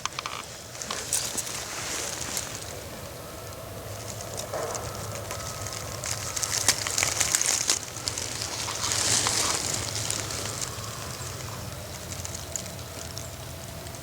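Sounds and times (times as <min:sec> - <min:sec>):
footsteps crunching dry leaves: 0:00.6 - 0:14.0
steady low rumble: 0:00.7 - 0:14.0.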